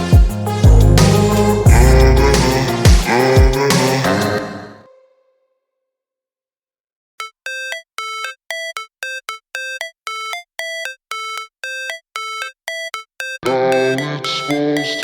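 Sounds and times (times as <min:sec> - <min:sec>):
bright synth notes: 0:00.0 - 0:04.3
electronic music with bass: 0:00.0 - 0:04.4.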